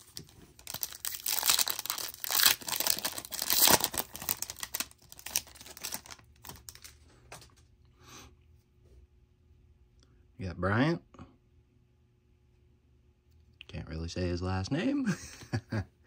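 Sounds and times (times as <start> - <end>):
foil wrapper tearing and crinkling: 0.0 - 7.0.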